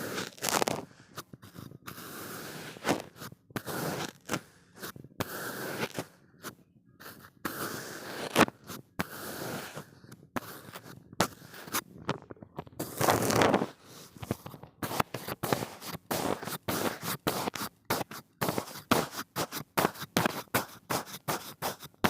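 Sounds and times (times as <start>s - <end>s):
sand crunching and scraping: 0.0s - 0.8s, 7.0s - 11.9s, 12.8s - 22.0s.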